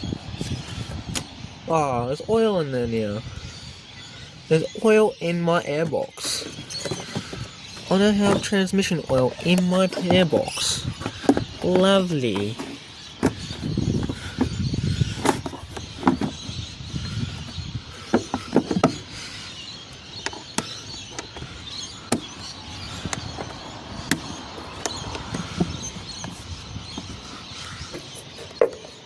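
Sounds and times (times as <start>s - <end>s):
plastic parts clicking and knocking: 9.4s - 14.5s, 18.1s - 19.0s.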